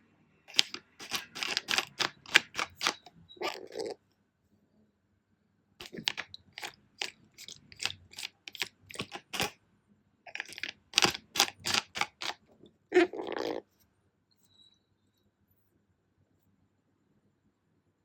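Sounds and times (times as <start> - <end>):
plastic bottle cap clicking: 0.5 - 3.9, 5.8 - 9.6, 10.3 - 12.4.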